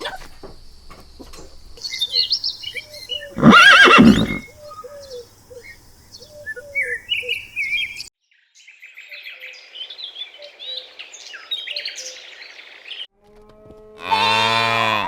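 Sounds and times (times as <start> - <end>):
birds chirping: 1.3 - 8.1.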